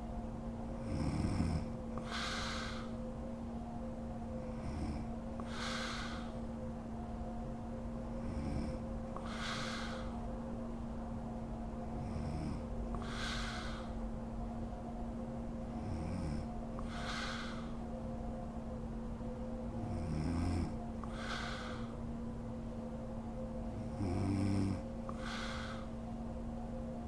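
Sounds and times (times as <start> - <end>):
steady low hum: 0.0 - 27.0
woman snoring: 0.8 - 2.9, 15.8 - 17.6, 19.8 - 21.8, 23.8 - 25.8.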